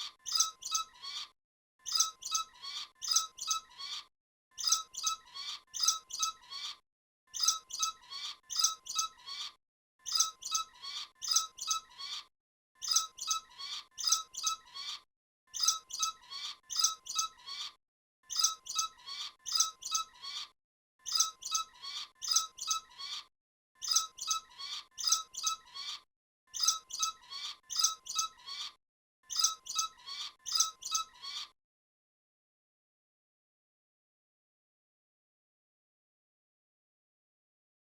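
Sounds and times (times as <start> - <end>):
bat squeaks: 26.6 - 31.6.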